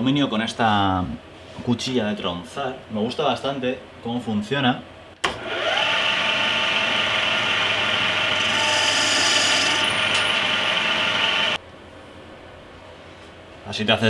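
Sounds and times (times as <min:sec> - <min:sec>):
lathe machine whine: 0:05.6 - 0:11.6
hissing metal cutting: 0:08.3 - 0:11.6.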